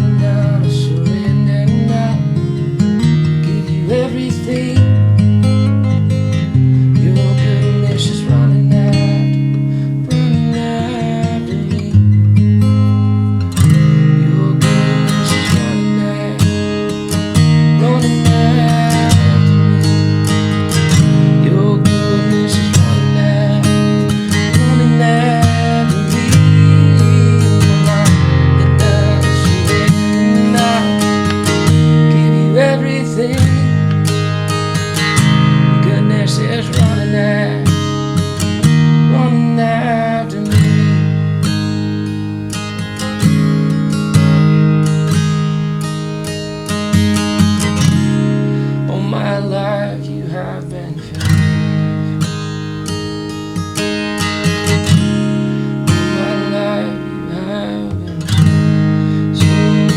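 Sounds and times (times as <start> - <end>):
acoustic guitar strumming chords: 0.0 - 59.9.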